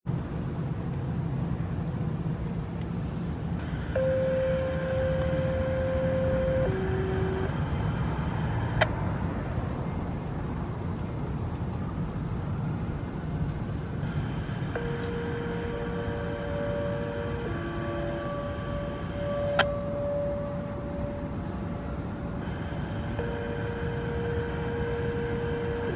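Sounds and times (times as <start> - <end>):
radio rumble and hiss: 2.7 - 10.3, 13.0 - 25.9
two-tone paging signal: 3.9 - 7.6, 14.8 - 21.4, 23.2 - 25.9.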